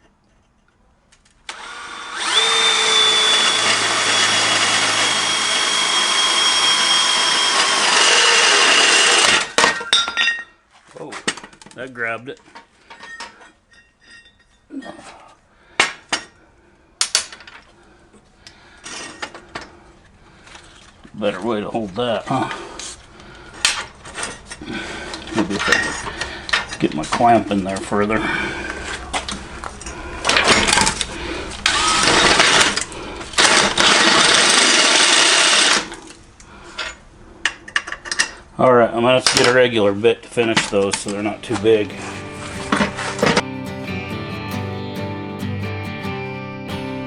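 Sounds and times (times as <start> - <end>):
electric drill cutting steel: 1.5 - 9.6, 30.3 - 36.0.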